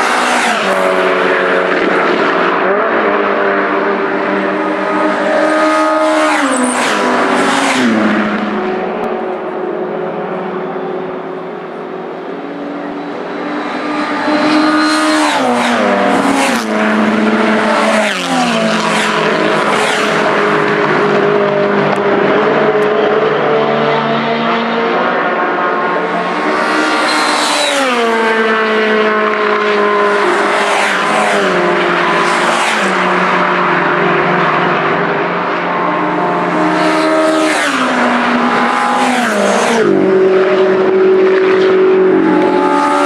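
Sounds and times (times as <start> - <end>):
racing cars passing at speed: 0.0 - 43.0.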